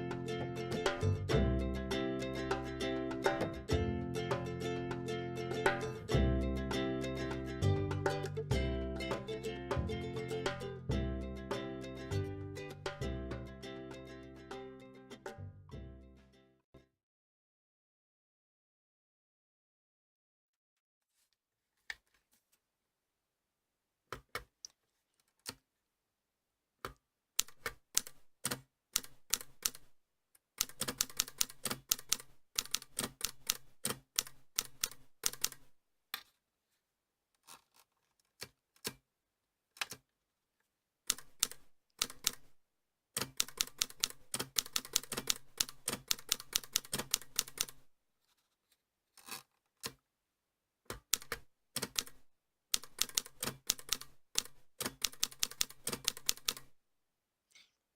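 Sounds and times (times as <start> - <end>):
manual typewriter keystrokes: 27.4 - 29.9, 30.6 - 35.7, 41.1 - 42.5, 43.2 - 47.8, 50.9 - 52.2, 52.8 - 56.7.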